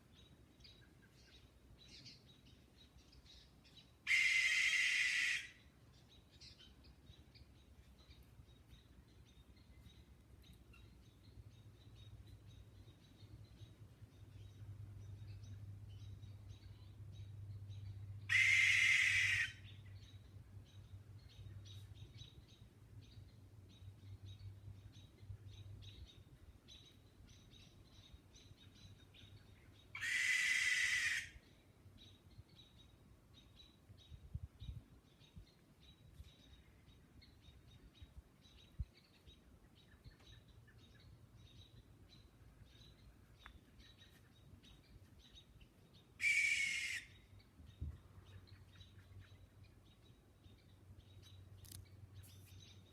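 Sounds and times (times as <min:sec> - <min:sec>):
owl hissing screeches: 0:04.1 - 0:05.5, 0:18.3 - 0:19.5, 0:30.0 - 0:31.4, 0:46.2 - 0:47.1.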